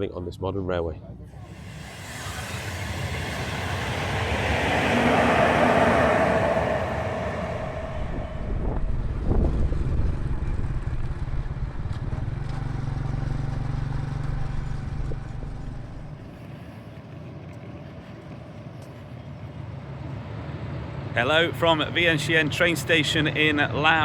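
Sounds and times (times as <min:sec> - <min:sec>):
passing vehicle rumble: 0:01.3 - 0:16.5.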